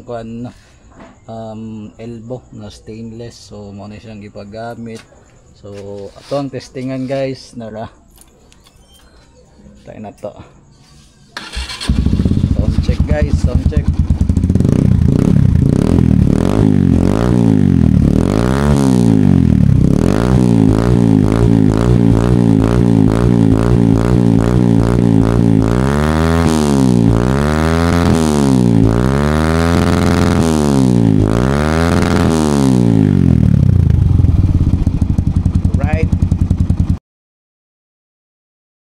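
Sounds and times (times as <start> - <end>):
motorcycle engine revving: 11.4 - 37.0.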